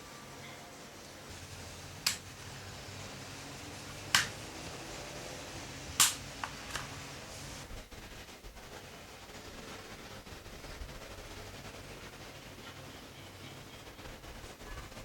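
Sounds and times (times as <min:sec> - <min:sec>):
sharp clicks: 0:02.0 - 0:02.2, 0:04.2 - 0:04.4, 0:06.0 - 0:06.9.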